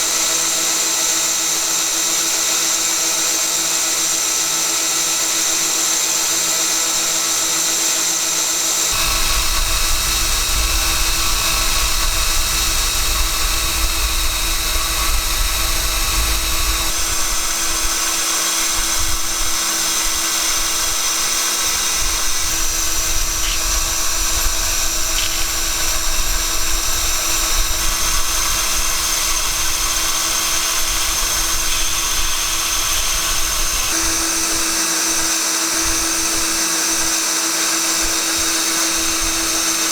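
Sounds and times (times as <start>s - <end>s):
electric power tool whining: 0.0s - 39.9s.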